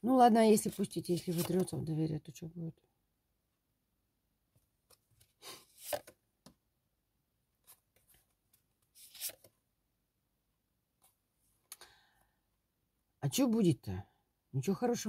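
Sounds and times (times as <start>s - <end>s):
cards sliding and rustling: 1.2s - 1.7s, 4.9s - 6.2s, 7.6s - 9.6s.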